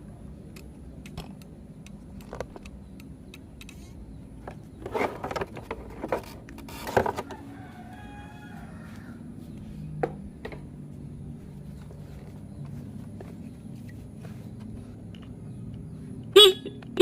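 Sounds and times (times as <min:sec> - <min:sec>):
steady low hum: 0:00.0 - 0:17.0
irregular clicks: 0:00.5 - 0:04.6.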